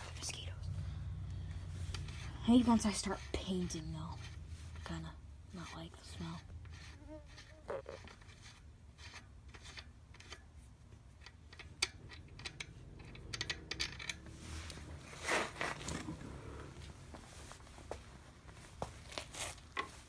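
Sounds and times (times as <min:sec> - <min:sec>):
metal tools clinking: 0:11.5 - 0:14.3.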